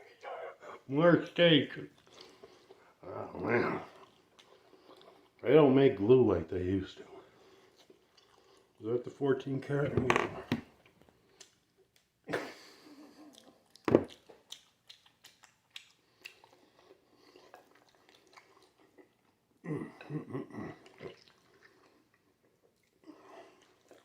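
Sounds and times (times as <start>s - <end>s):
man chewing with wet smacks: 1.8s - 3.0s, 3.7s - 5.4s, 7.3s - 8.8s, 10.7s - 24.0s.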